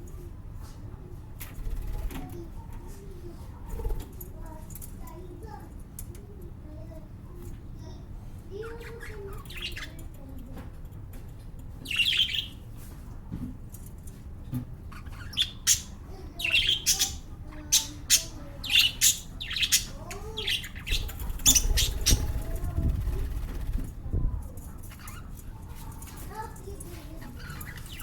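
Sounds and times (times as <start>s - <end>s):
birds squawking and chirping: 8.6s - 10.1s, 11.8s - 12.7s, 14.8s - 24.0s, 24.6s - 28.0s.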